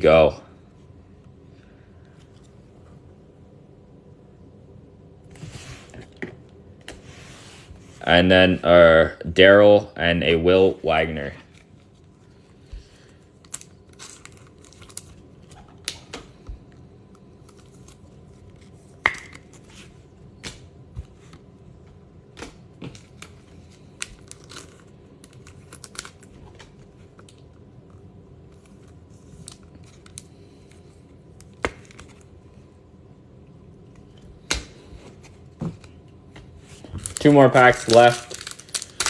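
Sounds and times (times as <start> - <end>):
foil wrappers crinkling: 11.4 - 16.0, 17.4 - 20.0, 22.9 - 27.5, 28.5 - 32.4, 36.7 - 39.0.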